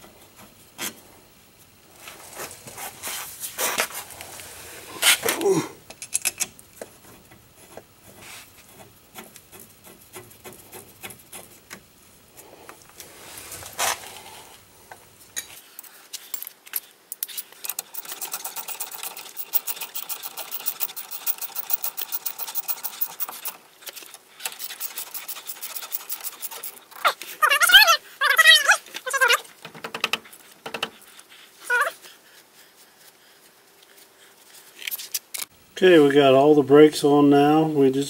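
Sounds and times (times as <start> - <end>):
tools scraping metal parts: 5.9 - 6.5, 15.4 - 27.1
fast metallic clicks: 17.2 - 23.6, 24.4 - 26.8.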